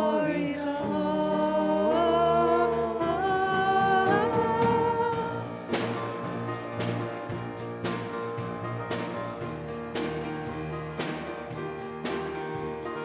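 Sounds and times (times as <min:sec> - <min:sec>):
worship band music: 0:00.0 - 0:13.0
drum and cymbal hits: 0:04.2 - 0:13.0.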